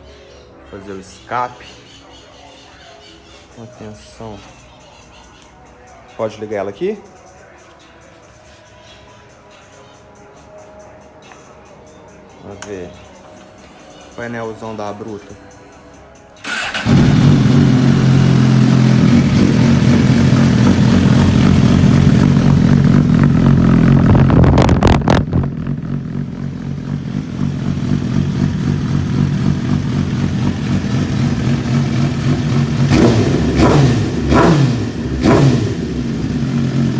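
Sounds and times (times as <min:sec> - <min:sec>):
motorcycle engine idling and revving: 0:16.4 - 0:36.9.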